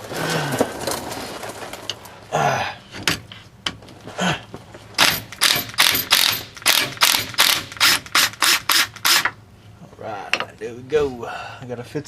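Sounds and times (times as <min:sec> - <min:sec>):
ratchet wrench clicking: 0:05.0 - 0:09.3.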